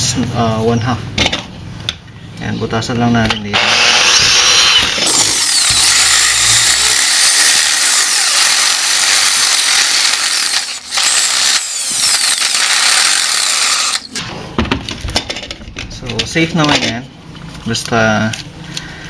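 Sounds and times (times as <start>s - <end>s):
electric drill boring: 3.5s - 14.2s.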